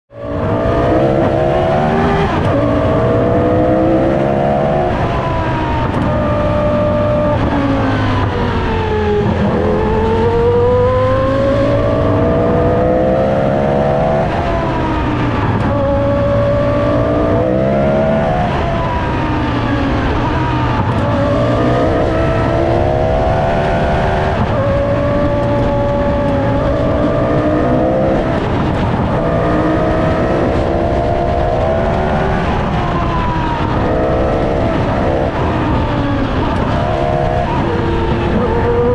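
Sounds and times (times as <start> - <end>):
racing car engine accelerating: 0.1 - 38.9.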